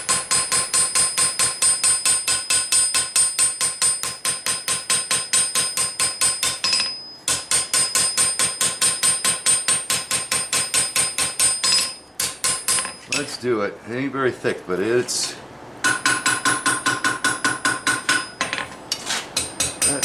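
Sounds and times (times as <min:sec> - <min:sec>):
hammer ringing on anvil: 0:00.0 - 0:13.4, 0:15.9 - 0:18.7.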